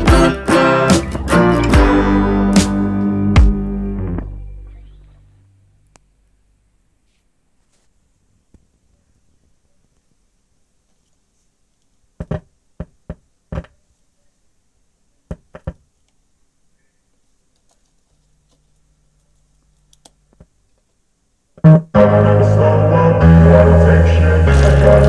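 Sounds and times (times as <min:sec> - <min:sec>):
music with heavy bass: 0:00.0 - 0:05.3, 0:21.6 - 0:25.0
faint low hum: 0:03.1 - 0:25.0.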